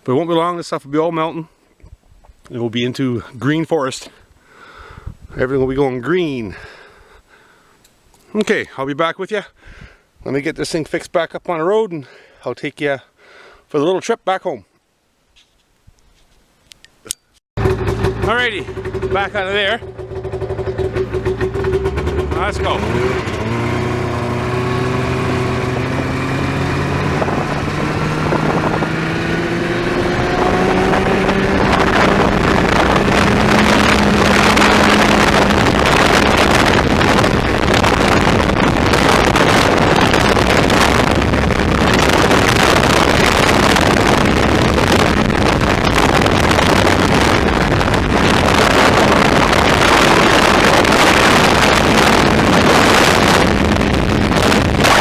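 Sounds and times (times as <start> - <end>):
wind noise on microphone: 1.8 - 2.4, 4.7 - 6.8, 17.6 - 55.0
snowmobile engine pulling away: 17.6 - 55.0.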